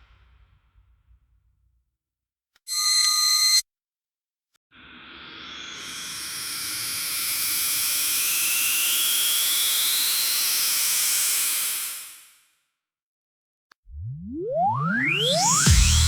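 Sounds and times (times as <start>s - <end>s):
machine whine rising in pitch: 13.9s - 16.0s.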